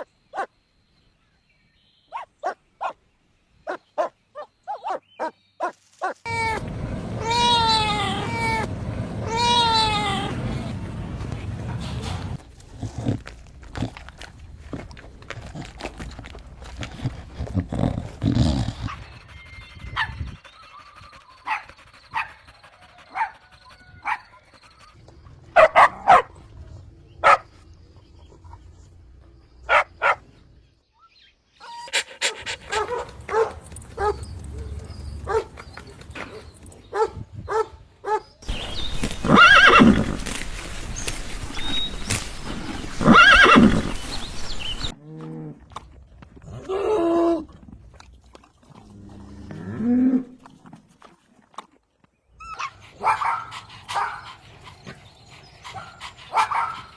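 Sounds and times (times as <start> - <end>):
dog barking and yipping: 3.7 - 6.2, 21.4 - 24.4, 25.6 - 26.3, 31.6 - 34.2, 37.0 - 44.9, 52.6 - 54.3, 55.7 - 56.9
horse whinnying: 38.5 - 44.9.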